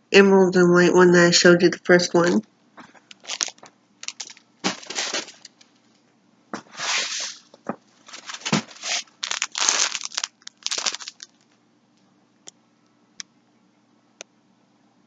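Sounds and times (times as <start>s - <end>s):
packaging crinkling: 3.1s - 5.8s, 6.8s - 11.6s.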